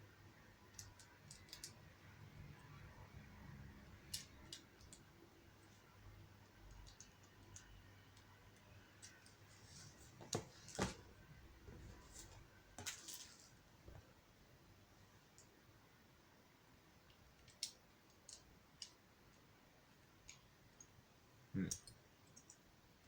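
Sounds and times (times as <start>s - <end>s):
lego pieces clicking: 0.7s - 1.8s, 17.4s - 19.0s
lego pieces snapping: 17.4s - 19.0s.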